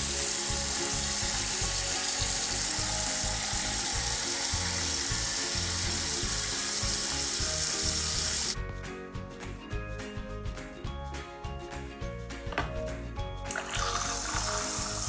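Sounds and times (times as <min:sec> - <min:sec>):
water running from a tap: 0:00.0 - 0:08.6, 0:13.5 - 0:15.0
background music: 0:00.0 - 0:15.0.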